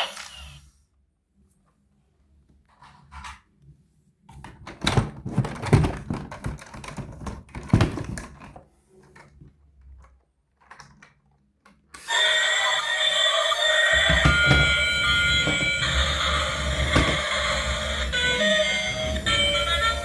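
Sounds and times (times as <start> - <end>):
toy cars knocking and clattering: 4.4 - 20.0.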